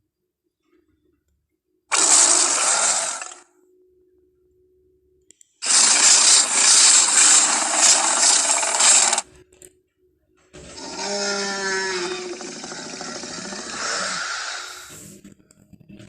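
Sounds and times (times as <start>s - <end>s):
pitched creature call: 10.8s - 14.9s
harsh hissing rasp: 10.8s - 15.2s.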